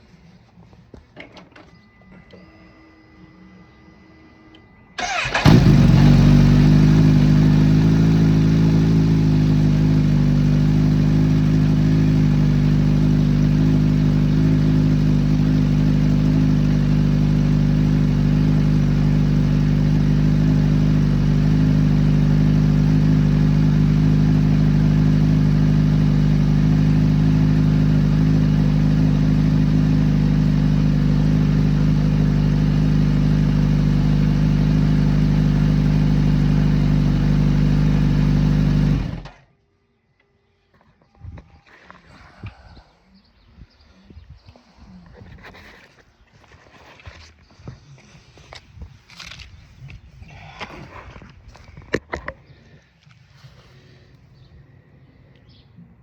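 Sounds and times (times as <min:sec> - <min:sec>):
motorcycle engine starting and idling: 0:05.0 - 0:39.5.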